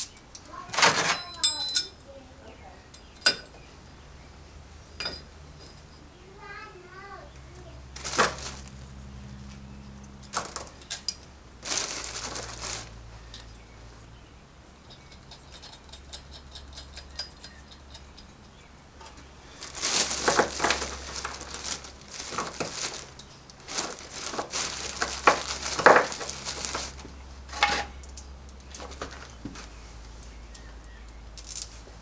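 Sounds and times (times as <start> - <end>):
metal tools clinking: 0.0 - 2.1, 2.8 - 3.7, 5.0 - 6.1, 7.9 - 8.9, 9.8 - 13.6, 14.8 - 29.4, 31.4 - 31.9.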